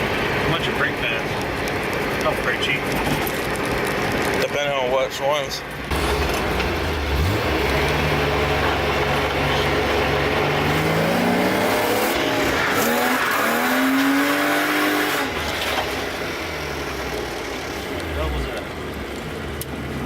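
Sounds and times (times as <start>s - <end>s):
car engine revving hard: 5.9s - 18.6s
tire squeal: 10.7s - 17.8s.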